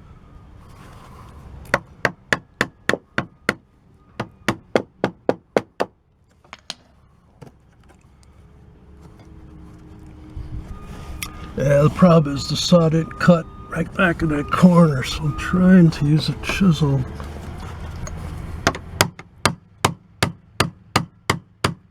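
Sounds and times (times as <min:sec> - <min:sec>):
hammer striking a chisel: 0:01.7 - 0:03.6, 0:04.2 - 0:05.9, 0:06.5 - 0:06.9, 0:18.6 - 0:21.8.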